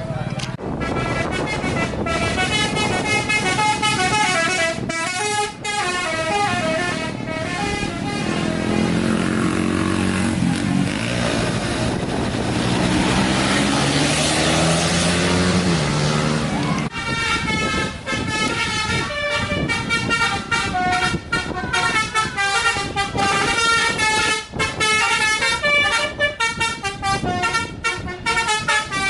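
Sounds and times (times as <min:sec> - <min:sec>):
traffic noise: 0:00.0 - 0:29.0
musical air horn tune: 0:00.7 - 0:09.3, 0:16.9 - 0:29.0.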